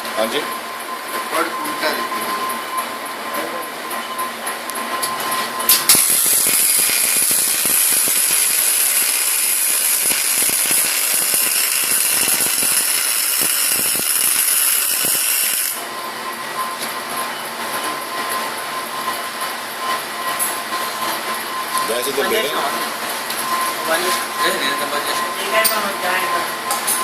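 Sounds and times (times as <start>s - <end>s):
welding arc crackling hiss: 5.7s - 15.8s
welding arc striking click: 5.7s - 15.8s.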